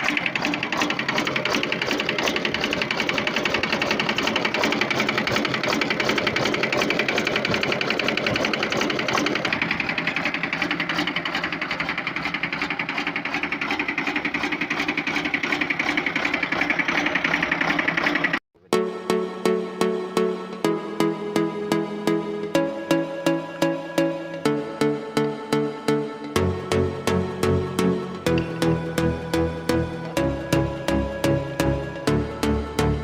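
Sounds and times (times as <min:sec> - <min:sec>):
diesel engine clattering knock: 0:00.0 - 0:18.4.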